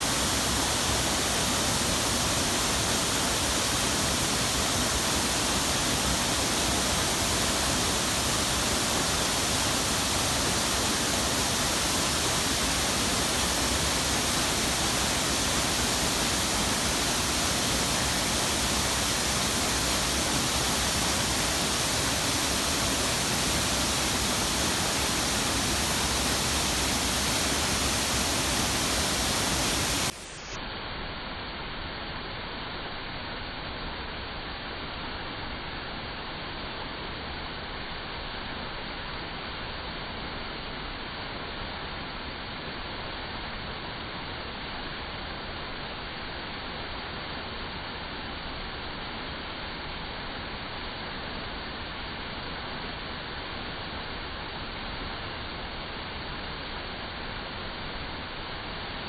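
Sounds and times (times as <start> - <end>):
waterfall rushing: 0.0 - 30.2.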